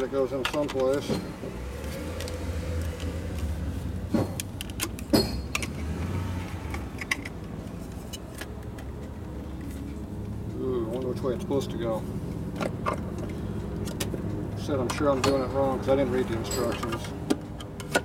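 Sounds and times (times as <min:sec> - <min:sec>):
plastic parts clicking together: 0:00.3 - 0:01.1, 0:04.3 - 0:05.8.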